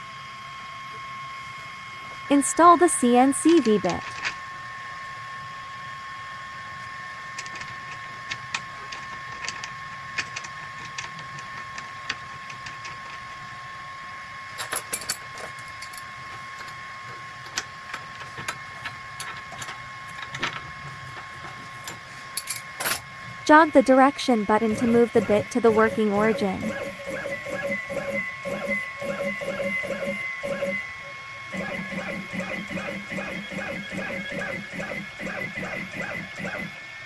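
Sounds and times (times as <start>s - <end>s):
high electrical whine: 14.3s - 37.0s.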